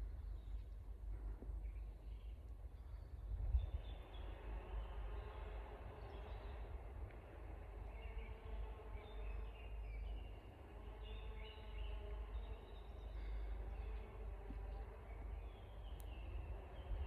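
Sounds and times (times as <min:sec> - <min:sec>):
low background rumble: 0:00.0 - 0:17.0
small birds chirping: 0:07.9 - 0:17.0.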